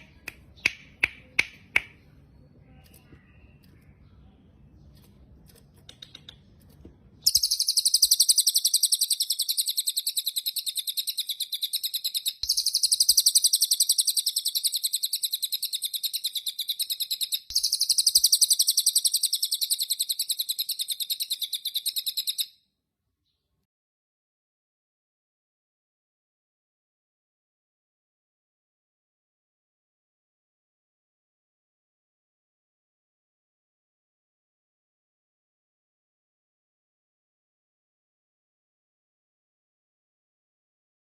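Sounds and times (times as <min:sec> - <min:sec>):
bird chirping rapidly: 0:07.2 - 0:22.5.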